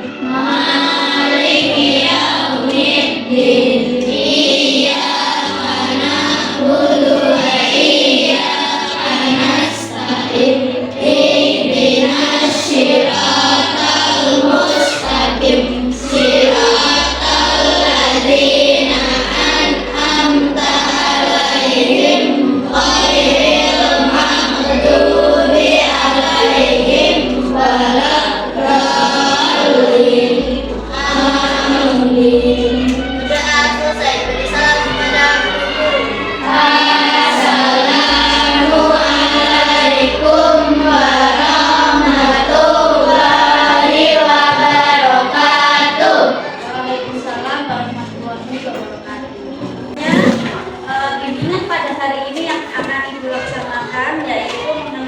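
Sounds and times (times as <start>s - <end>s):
instrumental backing: 0.0s - 47.2s
group of voices singing: 0.0s - 48.1s, 49.7s - 51.1s
deep bass line: 15.0s - 21.2s, 22.7s - 29.0s, 30.4s - 36.4s, 38.0s - 43.0s.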